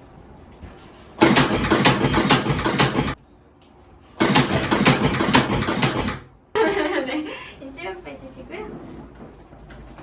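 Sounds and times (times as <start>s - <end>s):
rapid mechanical rattle: 1.2s - 3.2s, 4.2s - 6.3s.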